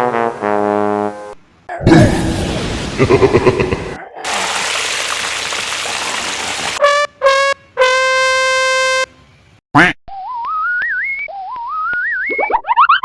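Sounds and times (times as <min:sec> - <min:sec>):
brassy horn blasts: 0:06.7 - 0:09.1.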